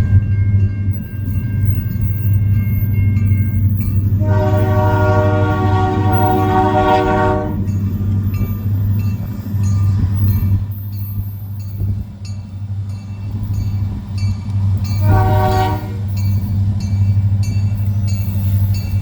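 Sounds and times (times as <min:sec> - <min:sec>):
low train rumble: 0:00.0 - 0:19.0
train horn blast: 0:04.2 - 0:07.6, 0:15.0 - 0:16.1.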